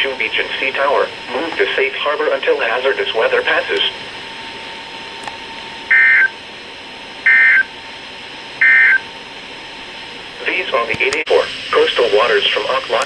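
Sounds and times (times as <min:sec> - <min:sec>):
shrill warbling tone bursts: 0:05.9 - 0:06.3.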